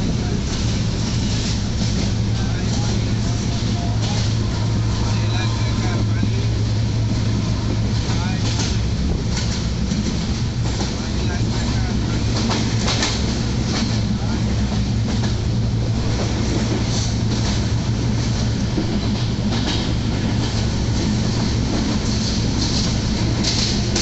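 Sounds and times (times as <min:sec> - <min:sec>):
train rumble: 0:00.0 - 0:24.0
wheels clacking over rails: 0:00.0 - 0:24.0.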